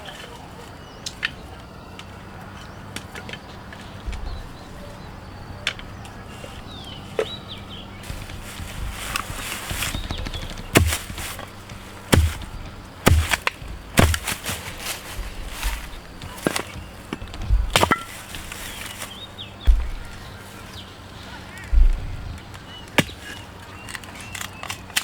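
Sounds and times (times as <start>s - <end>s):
light knocks and clicks of wood: 8.0s - 20.8s
wood chopping strikes: 8.0s - 20.8s, 23.0s - 23.4s.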